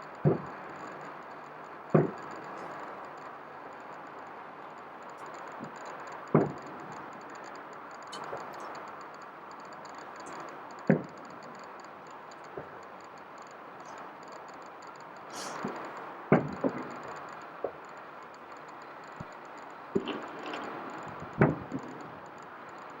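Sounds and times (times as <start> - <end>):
background hiss: 0.0 - 23.0
fireworks booming: 0.2 - 1.2, 1.9 - 3.1, 5.6 - 7.1, 15.3 - 17.0.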